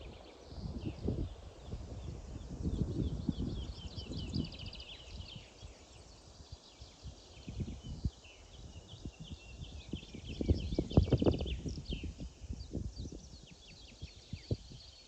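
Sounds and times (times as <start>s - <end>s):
songbirds singing and chirping: 0.0s - 15.0s.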